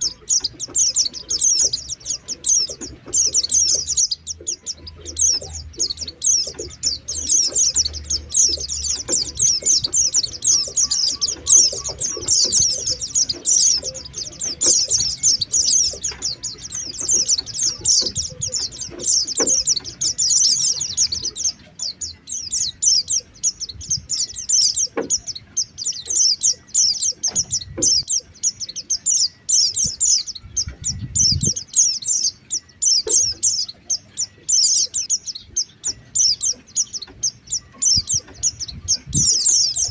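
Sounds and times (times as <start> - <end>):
bird chattering high chirps: 0.0 - 39.9.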